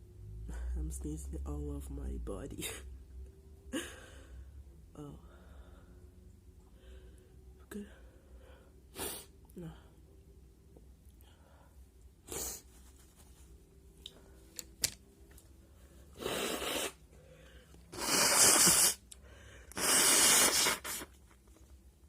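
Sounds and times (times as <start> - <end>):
burst of breath: 16.2 - 20.8.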